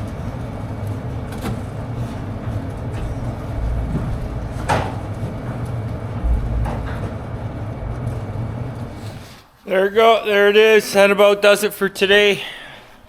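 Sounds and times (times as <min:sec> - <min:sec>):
low machine rumble: 0:00.0 - 0:09.4.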